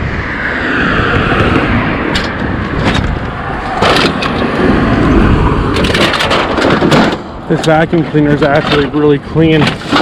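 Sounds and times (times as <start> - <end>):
car passing by: 0.0 - 5.8
road traffic noise: 0.0 - 10.0
sharp clicks and knocks: 2.1 - 4.6, 5.7 - 10.0.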